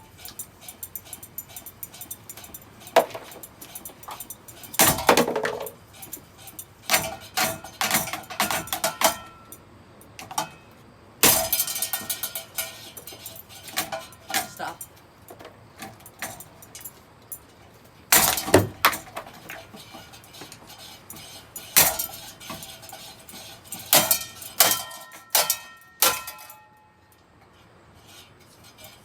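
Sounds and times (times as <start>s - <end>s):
pieces clinking and rattling: 0.0s - 9.6s
hard blows smashing ceiling fan: 11.2s - 14.5s, 18.1s - 26.6s.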